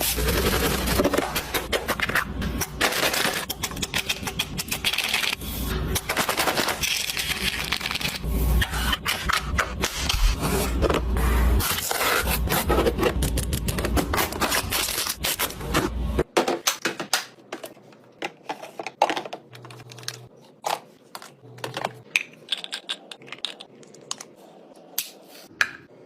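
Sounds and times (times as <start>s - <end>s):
items clicking and knocking: 15.7s - 24.4s.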